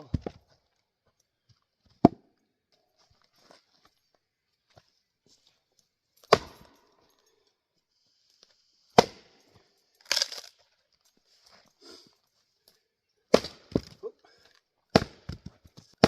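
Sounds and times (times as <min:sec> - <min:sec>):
axe chopping wood: 0:06.2 - 0:06.8, 0:09.0 - 0:09.4, 0:13.3 - 0:14.0, 0:14.9 - 0:16.0.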